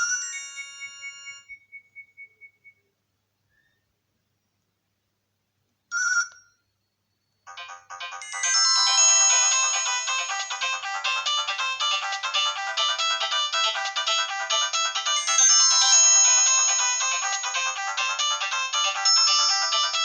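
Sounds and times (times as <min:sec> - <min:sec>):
polyphonic ringtone melody: 0:00.0 - 0:01.5, 0:07.5 - 0:20.0.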